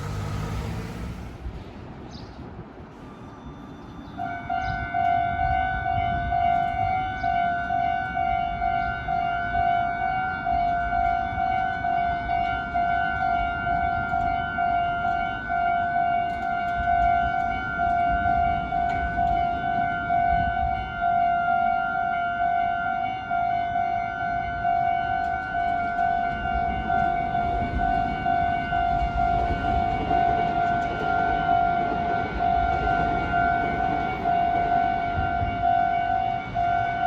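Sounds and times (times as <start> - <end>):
railroad crossing bell ringing: 25.1 - 37.0.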